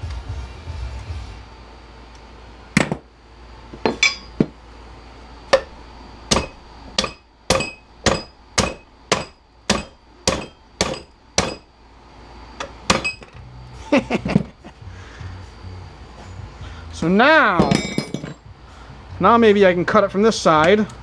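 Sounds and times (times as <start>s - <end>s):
hammer striking metal: 3.8s - 4.5s, 5.5s - 11.7s, 12.6s - 13.4s, 17.6s - 18.4s.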